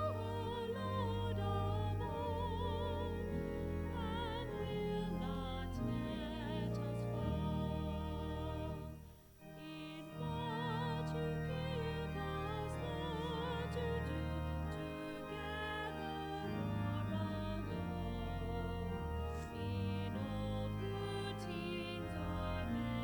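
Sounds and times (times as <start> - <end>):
solo singing with vibrato: 0.0 - 3.2, 3.9 - 8.9, 9.6 - 14.3
sustained low accompaniment: 0.0 - 23.0.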